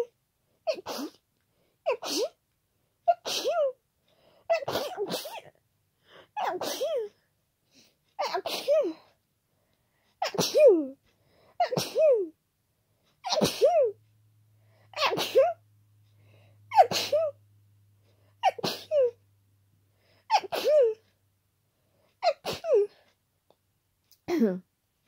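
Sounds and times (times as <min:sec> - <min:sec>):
person sneezing: 0:00.7 - 0:01.2, 0:10.2 - 0:10.9, 0:13.2 - 0:14.0, 0:16.7 - 0:17.4, 0:18.4 - 0:19.2.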